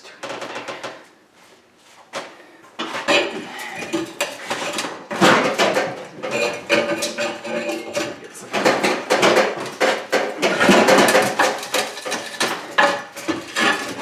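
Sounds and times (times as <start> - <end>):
metal clanking and scraping: 2.8 - 14.0.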